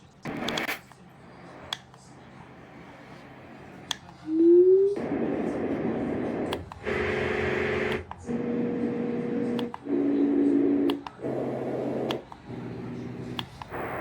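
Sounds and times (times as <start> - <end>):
white noise machine: 5.0 - 14.0.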